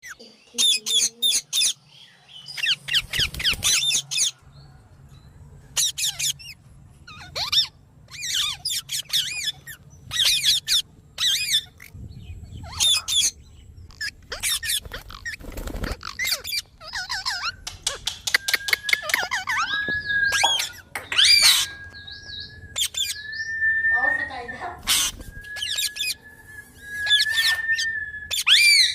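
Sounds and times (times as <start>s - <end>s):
parrot squeaky calls: 0.0s - 1.8s, 2.5s - 4.4s, 5.8s - 26.2s, 27.0s - 28.9s
low rumble: 9.5s - 18.3s.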